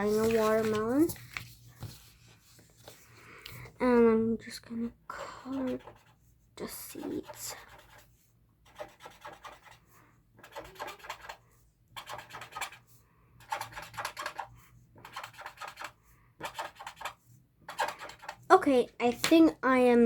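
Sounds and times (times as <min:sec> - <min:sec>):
marker scratching on paper: 0:05.4 - 0:18.5.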